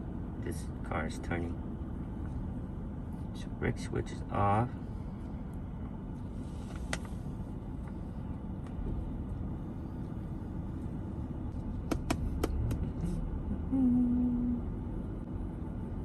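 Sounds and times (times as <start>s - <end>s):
vehicle rumble: 0.0s - 16.0s.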